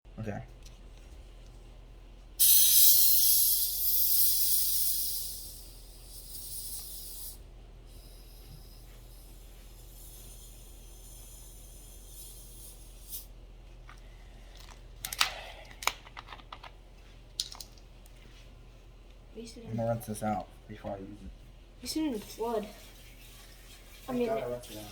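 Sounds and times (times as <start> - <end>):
faint steady hum: 0.1 - 24.9
soda bottle fizzing hiss: 2.4 - 13.3
sharp clicks and knocks: 14.6 - 16.8.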